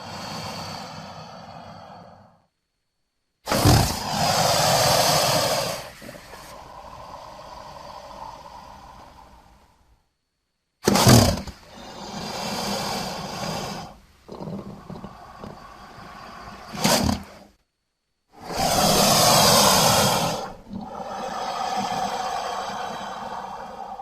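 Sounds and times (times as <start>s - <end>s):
monster roar: 3.5s - 9.6s, 18.4s - 24.0s.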